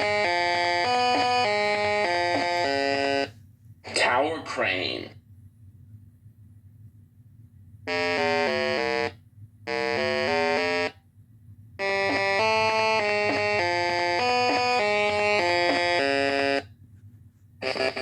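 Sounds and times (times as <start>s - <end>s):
synthesizer keyboard tune: 0.0s - 3.3s, 7.9s - 11.0s, 11.8s - 16.7s, 17.6s - 18.0s
faint low hum: 0.0s - 18.0s.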